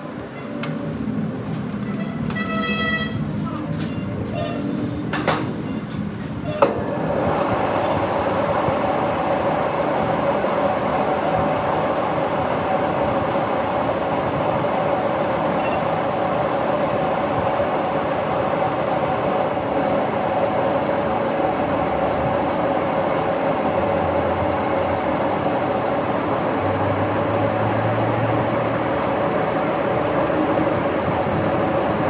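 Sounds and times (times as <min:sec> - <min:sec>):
metal lathe whining: 0:07.1 - 0:32.0.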